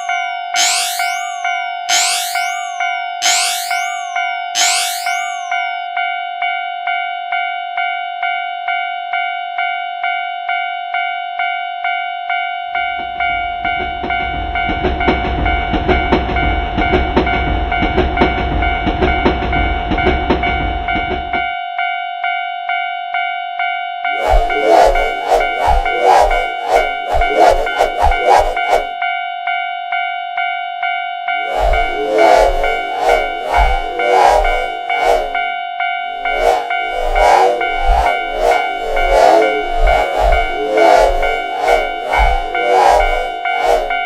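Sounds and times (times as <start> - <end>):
train rumble: 12.8 - 21.4.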